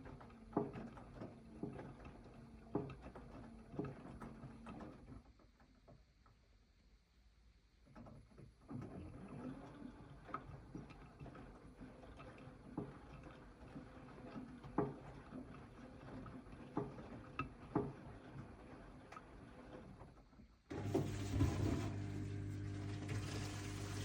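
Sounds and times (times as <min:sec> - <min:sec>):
washing machine drum rumbling: 0:20.7 - 0:24.0.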